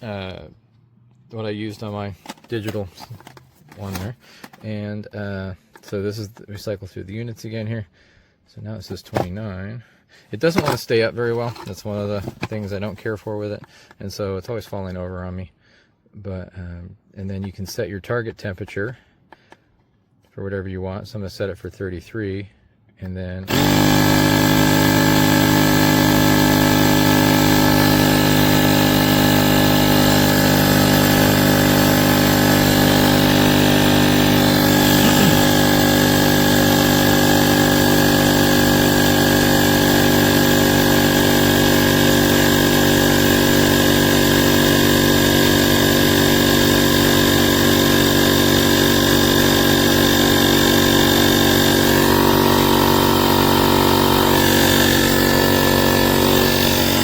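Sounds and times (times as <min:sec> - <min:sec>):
tire inflator compressor running: 0:00.0 - 0:00.3, 0:01.8 - 0:04.7, 0:08.9 - 0:09.3, 0:10.3 - 0:13.0, 0:23.5 - 0:57.0.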